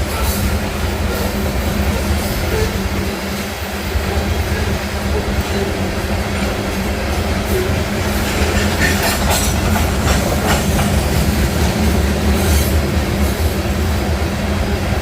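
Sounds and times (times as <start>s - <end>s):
train rumbling by: 0.0s - 15.0s
wheels clicking over rails: 0.4s - 13.5s.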